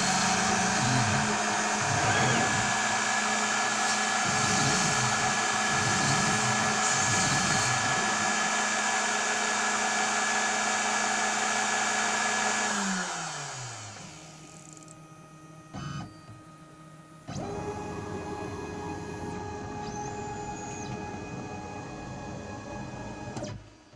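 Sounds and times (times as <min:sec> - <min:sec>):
motor spinning down: 0:00.0 - 0:16.3, 0:17.2 - 0:23.6
electric motor running: 0:00.0 - 0:23.6
steady motor hum: 0:00.0 - 0:23.9.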